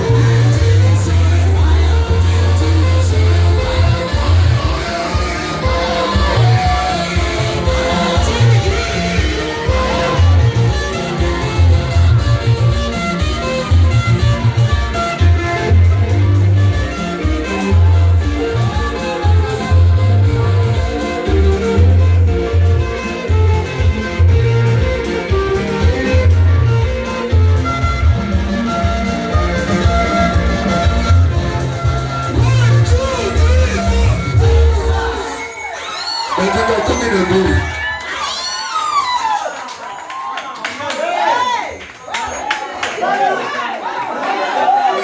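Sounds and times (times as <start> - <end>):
plucked guitar: 0.0 - 35.4
pulsing bass line: 0.0 - 35.5
held melody notes: 0.0 - 35.8
amplified worship band music: 0.0 - 38.0.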